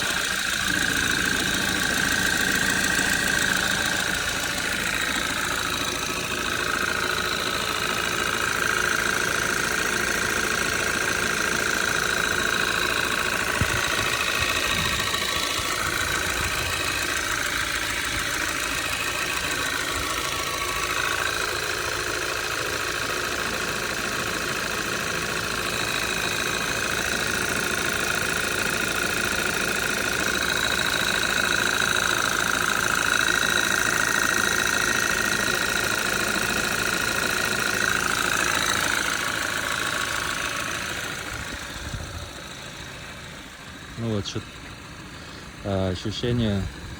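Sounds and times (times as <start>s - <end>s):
car engine idling: 0.0s - 46.9s
knock inside engine: 0.3s - 18.6s.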